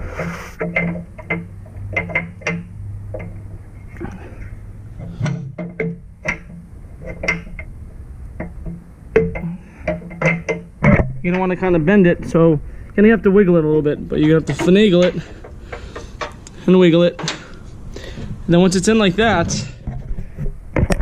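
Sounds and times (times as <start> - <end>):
metal bracket clinking: 0.6 - 3.9, 4.9 - 7.7, 8.4 - 11.7, 13.9 - 17.6.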